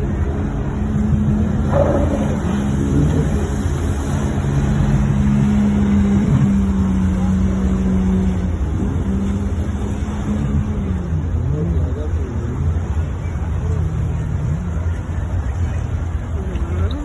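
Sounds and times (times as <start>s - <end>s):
engines rumbling: 0.0s - 17.0s.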